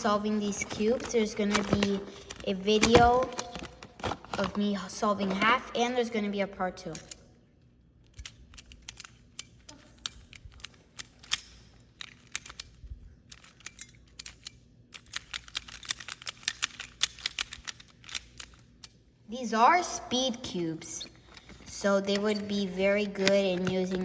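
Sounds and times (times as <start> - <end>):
plastic puzzle clicking: 8.1 - 19.0, 23.0 - 24.0.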